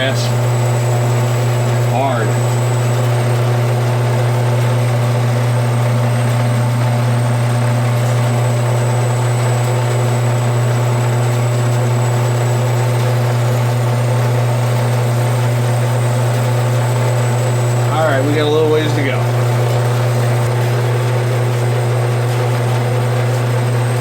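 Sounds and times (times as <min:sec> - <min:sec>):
band saw cutting metal: 0:00.0 - 0:06.4.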